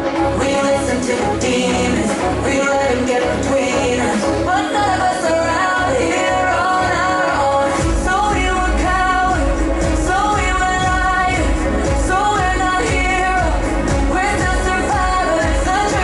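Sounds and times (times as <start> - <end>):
pop song with vocals: 0.0 - 16.0
heavy bass beat: 7.8 - 16.0.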